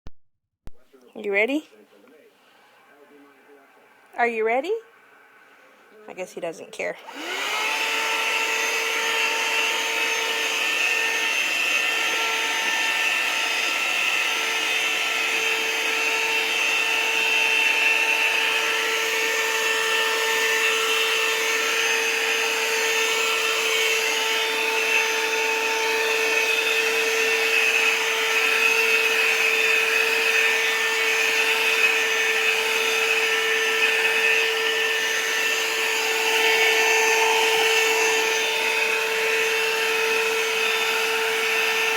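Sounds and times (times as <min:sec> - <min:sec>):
vacuum cleaner running: 0:04.8 - 0:41.9.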